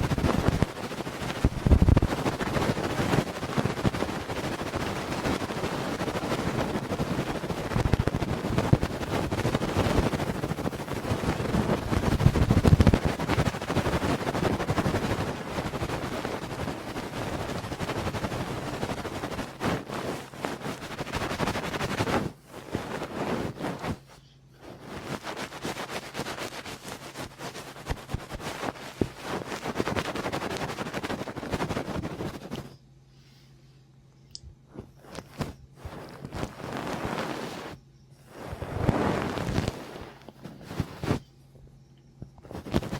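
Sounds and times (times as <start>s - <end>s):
crackling and rubbing on microphone: 0.0s - 32.8s, 34.6s - 41.3s, 42.2s - 42.9s.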